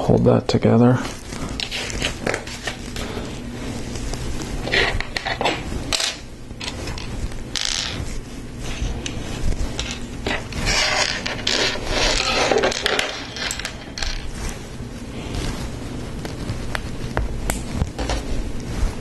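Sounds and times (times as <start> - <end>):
plastic parts clicking and scraping: 9.8 - 14.2.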